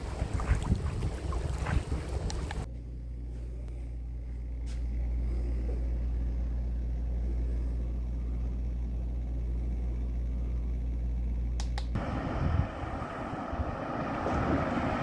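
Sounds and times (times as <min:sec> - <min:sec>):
wind on microphone: 0:00.0 - 0:02.7, 0:12.0 - 0:15.0
engine droning: 0:00.0 - 0:15.0.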